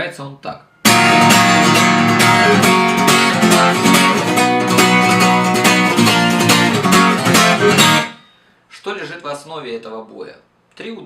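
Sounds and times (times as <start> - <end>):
guitar strumming: 0.8 - 8.5.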